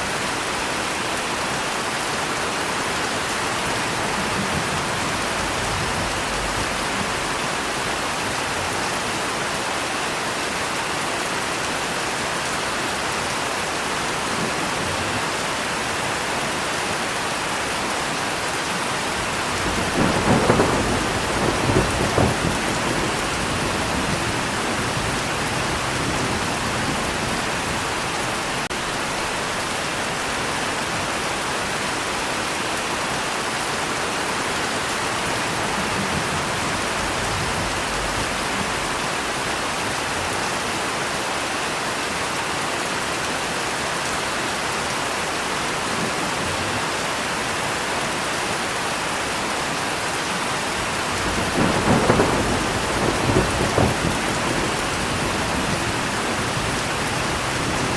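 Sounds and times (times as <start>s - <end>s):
heavy rain falling: 0.0s - 57.9s
thunder rolling: 3.5s - 8.0s, 19.2s - 29.3s, 35.2s - 39.6s, 51.0s - 57.9s.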